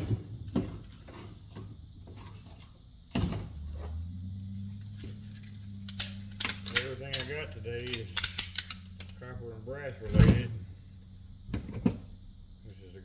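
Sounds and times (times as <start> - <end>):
low steady hum: 3.5 - 13.0
light clicks of parts: 4.8 - 9.3.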